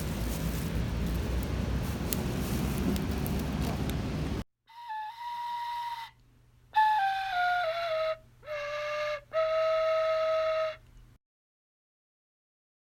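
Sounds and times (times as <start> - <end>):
flute-like melody: 4.7 - 6.2, 6.8 - 10.8.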